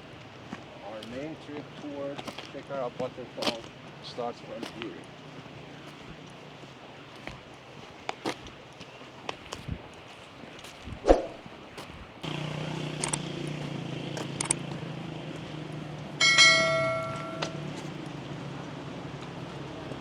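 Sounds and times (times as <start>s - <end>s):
steady low hum: 12.2s - 19.0s
footstep-like clicks: 13.0s - 13.3s, 14.2s - 14.8s
metallic bell-like ring: 16.2s - 17.8s.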